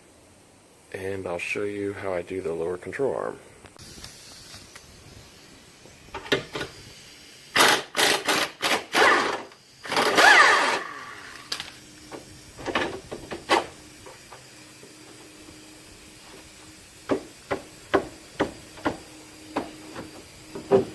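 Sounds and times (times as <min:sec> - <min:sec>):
power tool running: 0:03.8 - 0:20.9.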